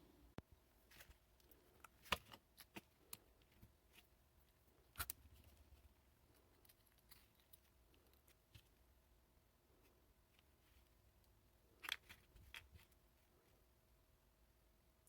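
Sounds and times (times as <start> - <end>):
plastic parts clicking and tapping: 0.4 - 4.1, 11.2 - 12.9.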